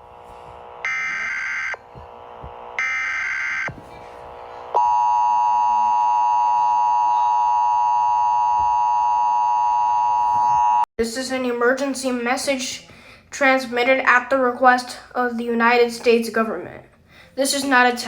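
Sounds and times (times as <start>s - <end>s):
buzzy digital data bursts: 0.0s - 8.4s
harsh two-tone attention signal: 0.3s - 3.8s.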